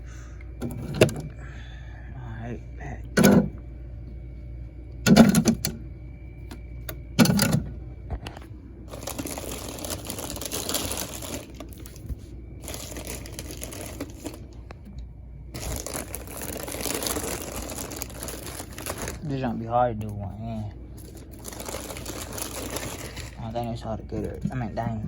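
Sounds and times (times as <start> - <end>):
plastic crinkling: 8.9 - 14.9, 15.5 - 19.6, 20.9 - 23.8.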